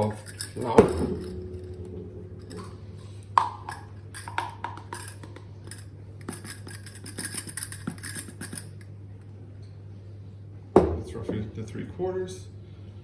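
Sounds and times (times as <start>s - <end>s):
low steady hum: 0.0s - 13.0s
measuring cup clinking and scraping: 3.4s - 8.8s.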